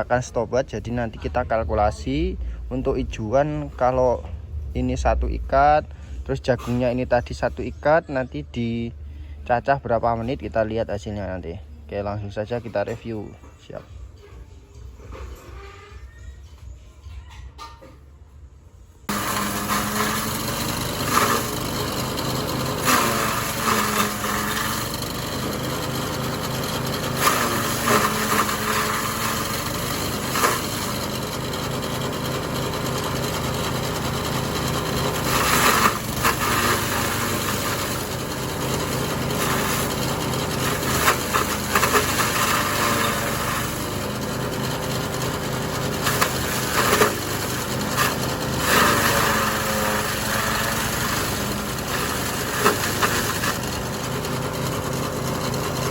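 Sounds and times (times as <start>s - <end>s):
forage chopper running: 19.1s - 55.9s.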